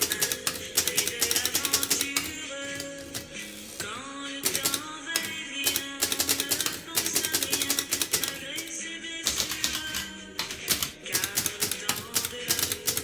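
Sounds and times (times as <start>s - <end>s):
background music: 0.0s - 13.0s
typewriter key strikes: 0.0s - 13.0s.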